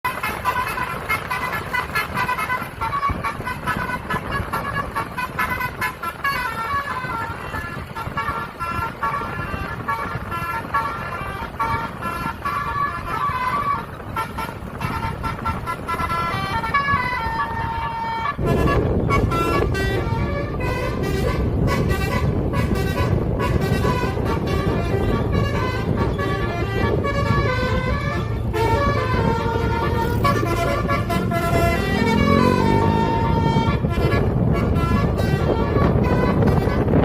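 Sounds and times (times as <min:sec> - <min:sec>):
bus engine rumble: 0:00.0 - 0:37.0
musical bus horn playing tune: 0:00.1 - 0:37.0.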